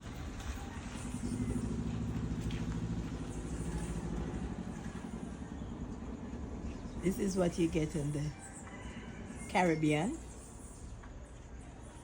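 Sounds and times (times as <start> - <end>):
vehicle engine rumble: 0.0 - 12.0.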